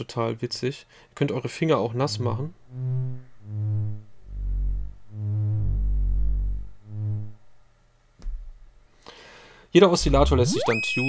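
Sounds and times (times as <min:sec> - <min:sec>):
low synthesizer drone: 0:02.7 - 0:07.4, 0:10.0 - 0:11.0.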